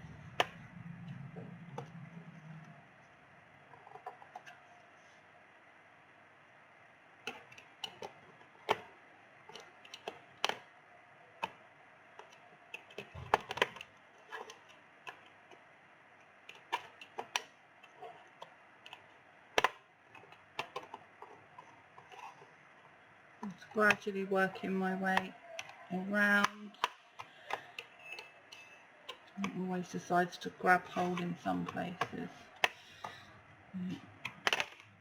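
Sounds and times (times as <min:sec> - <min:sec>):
plastic clips popping: 0:19.6 - 0:19.8, 0:34.2 - 0:34.9.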